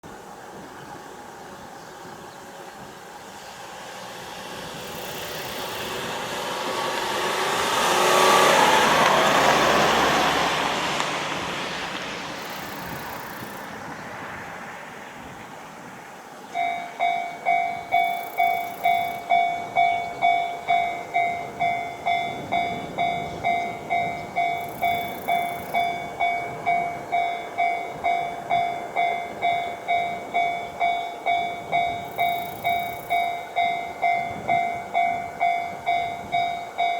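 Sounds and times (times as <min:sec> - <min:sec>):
vehicle passing: 0:03.3 - 0:15.2
level crossing bell clanging: 0:16.5 - 0:36.9.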